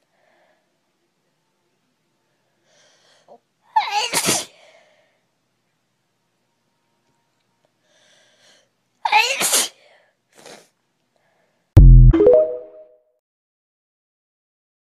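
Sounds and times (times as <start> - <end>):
girl sneezing: 3.8 - 4.6, 9.1 - 9.8.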